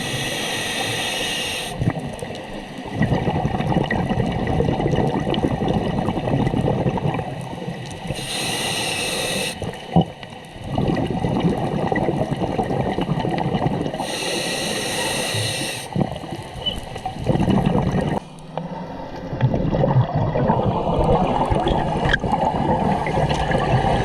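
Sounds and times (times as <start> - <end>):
hissing regulator inhalation: 0.0 - 1.8, 8.1 - 9.6, 14.0 - 16.0
bubbling underwater exhalation: 10.6 - 15.3, 17.2 - 18.2.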